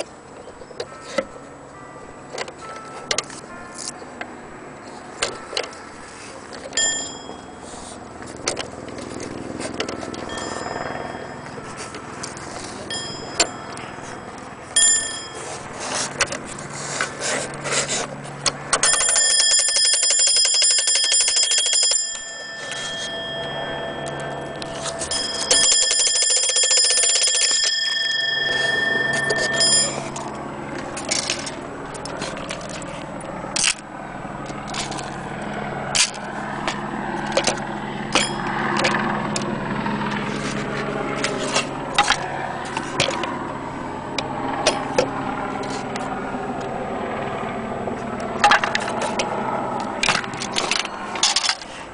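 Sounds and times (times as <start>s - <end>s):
alarm clock bell ringing: 6.7s - 8.1s, 8.8s - 16.0s, 18.8s - 30.5s, 38.1s - 38.7s.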